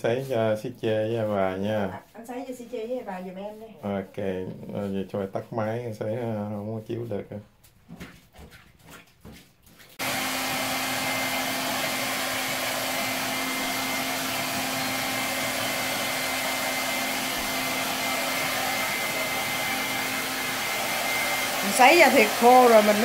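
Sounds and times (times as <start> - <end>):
hair dryer blowing: 10.0 - 23.0.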